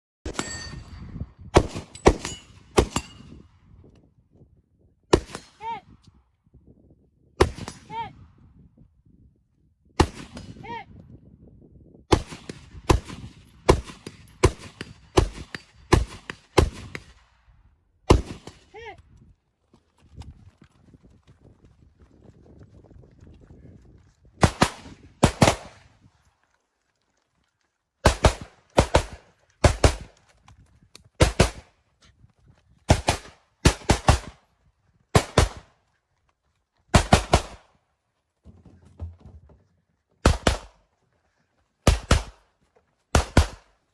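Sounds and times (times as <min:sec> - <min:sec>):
rifle shots with echo: 0:01.6 - 0:03.4, 0:05.1 - 0:05.7, 0:07.4 - 0:08.0, 0:10.0 - 0:10.6, 0:12.1 - 0:17.4, 0:18.1 - 0:18.7, 0:24.4 - 0:25.9, 0:28.0 - 0:30.1, 0:31.2 - 0:31.7, 0:32.9 - 0:34.4, 0:35.2 - 0:35.7, 0:36.9 - 0:37.7, 0:40.2 - 0:40.8, 0:41.8 - 0:42.4, 0:43.1 - 0:43.7
rifle shots cracking: 0:24.4 - 0:25.8, 0:28.0 - 0:30.1, 0:32.9 - 0:34.4, 0:35.2 - 0:35.7, 0:37.0 - 0:37.7, 0:40.2 - 0:40.8, 0:41.9 - 0:42.4, 0:43.1 - 0:43.7.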